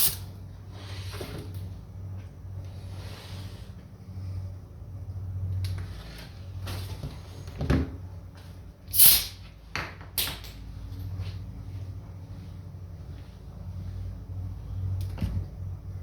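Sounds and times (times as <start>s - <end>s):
spray paint hissing: 0.0s - 0.2s, 8.9s - 9.4s
steady low hum: 0.0s - 16.0s.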